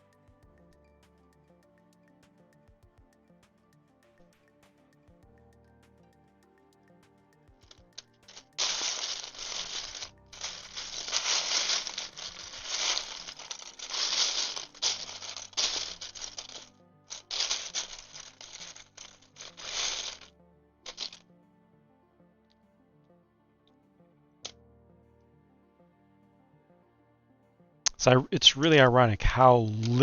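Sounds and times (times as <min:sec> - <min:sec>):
soft background music: 0:00.0 - 0:30.0
loud rustling and rattling: 0:08.2 - 0:20.3, 0:20.9 - 0:21.2.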